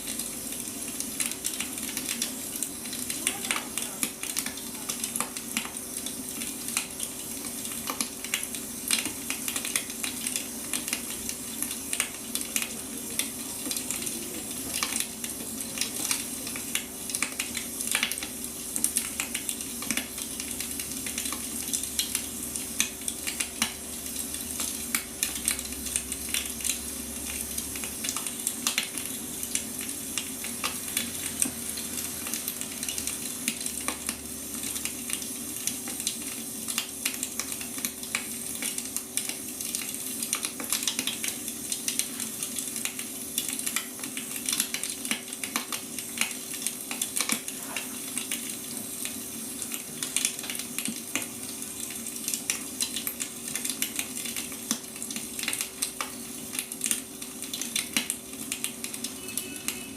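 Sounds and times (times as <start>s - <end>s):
wood fire crackling and popping: 0.0s - 59.9s.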